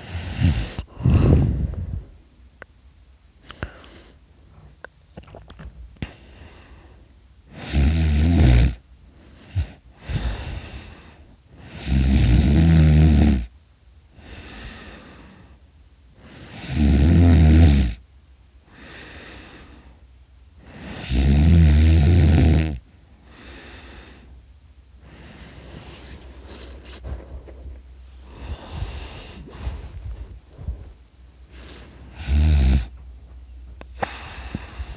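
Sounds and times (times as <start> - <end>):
person snoring loudly: 0.0 - 1.7, 7.5 - 8.8, 11.6 - 13.5, 16.4 - 18.0, 20.6 - 24.1, 31.5 - 32.9
soft breath: 0.0 - 2.3, 3.4 - 4.8, 6.0 - 7.2, 9.1 - 11.8, 14.1 - 16.6, 18.7 - 21.1, 23.0 - 33.0, 33.8 - 34.9.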